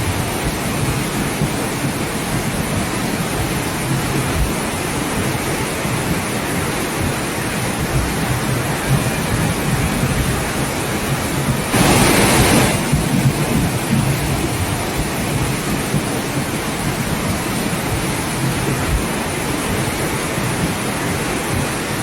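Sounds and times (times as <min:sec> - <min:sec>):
floodwater rushing: 0:04.5 - 0:22.0.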